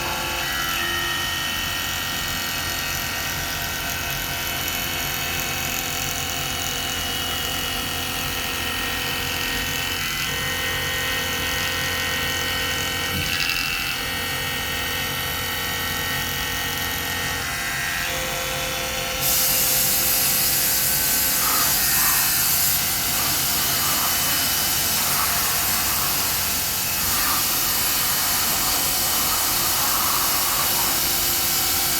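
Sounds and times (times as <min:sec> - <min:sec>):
milling machine whine: 0:00.0 - 0:03.0, 0:17.0 - 0:31.9
loud hiss: 0:19.2 - 0:31.9.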